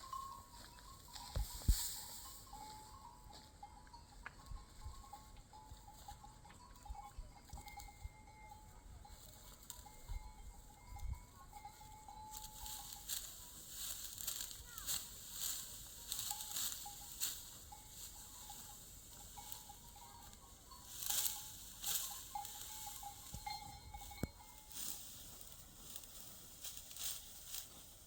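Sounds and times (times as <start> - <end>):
dry rustling and crunching: 12.3 - 28.0.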